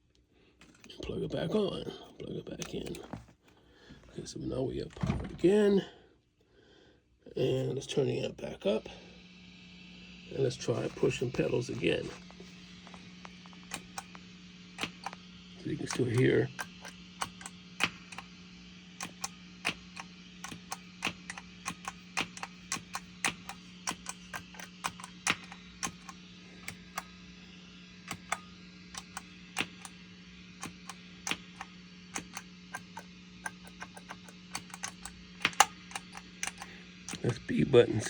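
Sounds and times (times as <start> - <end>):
amp hum: 0.0 - 6.6, 7.2 - 38.0
pop through guitar amp: 10.3 - 38.0
footswitch clicks: 10.5 - 18.4, 19.0 - 37.4.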